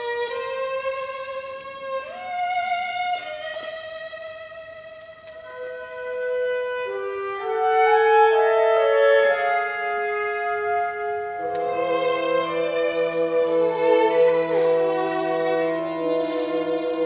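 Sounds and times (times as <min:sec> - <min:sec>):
wind and brass ensemble chord: 0:08.3 - 0:17.0.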